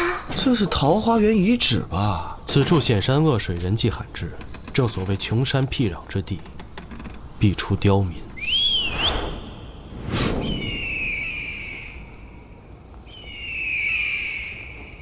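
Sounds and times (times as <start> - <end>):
bird of prey screeching: 8.4 - 9.6, 10.4 - 12.2
whoosh: 8.6 - 12.4.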